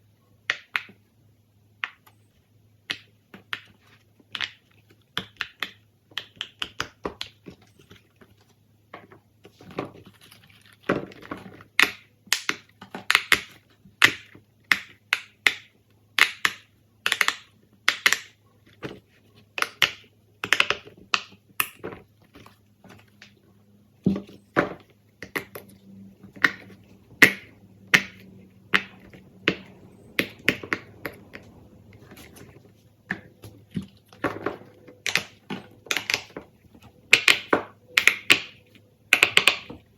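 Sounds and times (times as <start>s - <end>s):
fidget toys popping and clicking: 11.8s - 18.4s, 19.6s - 21.9s, 26.3s - 33.4s, 34.2s - 36.4s, 37.1s - 39.8s
faint low hum: 15.8s - 39.9s.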